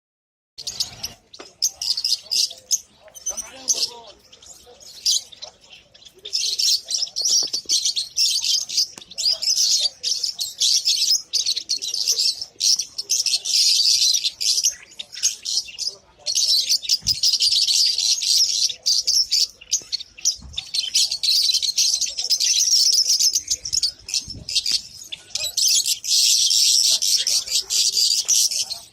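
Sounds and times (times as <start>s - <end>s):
small birds chirping: 0.6s - 28.9s.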